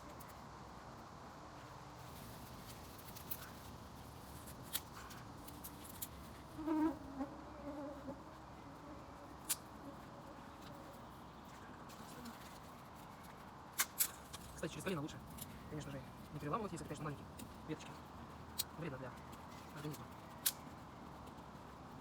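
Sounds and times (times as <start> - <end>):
wood fire crackling: 0.0 - 6.8, 10.5 - 22.0
fly buzzing: 5.5 - 11.0.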